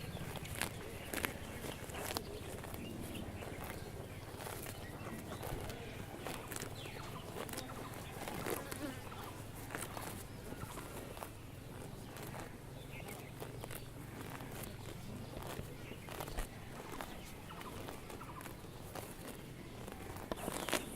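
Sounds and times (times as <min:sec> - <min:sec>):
steady low rumble: 0:00.0 - 0:08.4
cows tearing and chewing grass: 0:00.0 - 0:20.9.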